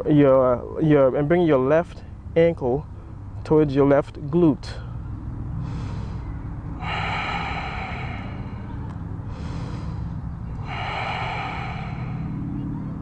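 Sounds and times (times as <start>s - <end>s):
steady low hum: 4.5s - 13.0s
person breathing deeply: 4.9s - 13.0s.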